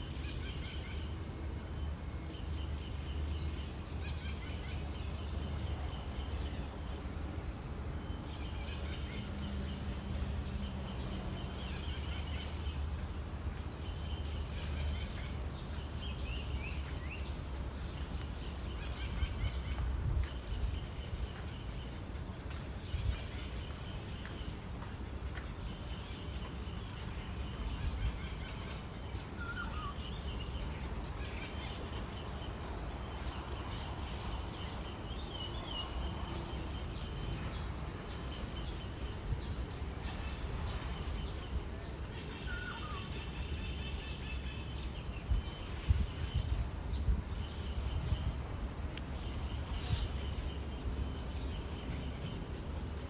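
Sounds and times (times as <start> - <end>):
cicadas droning: 0.0 - 53.0
faint bird chirps and trills: 25.7 - 48.4
short falling bird calls: 29.4 - 30.1, 42.4 - 43.2.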